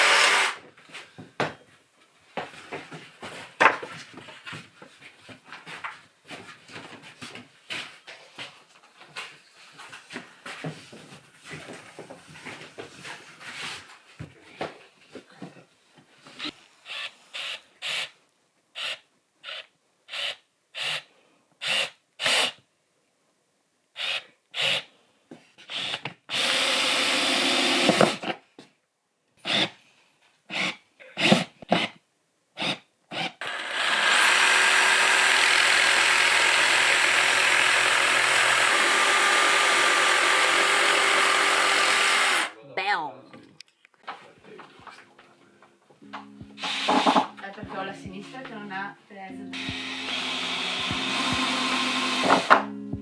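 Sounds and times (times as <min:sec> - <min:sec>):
power tool running: 0:00.0 - 0:00.6, 0:25.7 - 0:28.2, 0:33.2 - 0:42.5, 0:46.6 - 0:47.3, 0:49.5 - 0:52.7.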